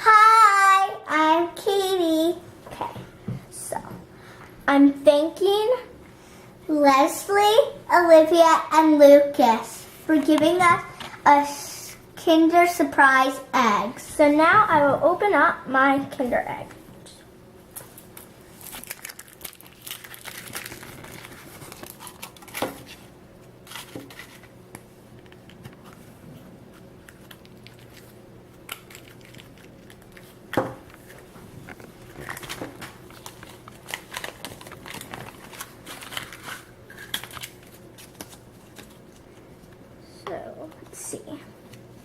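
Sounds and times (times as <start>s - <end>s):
foil wrapper tearing and crinkling: 18.0s - 23.0s, 23.6s - 24.5s, 27.0s - 31.3s, 32.0s - 39.2s.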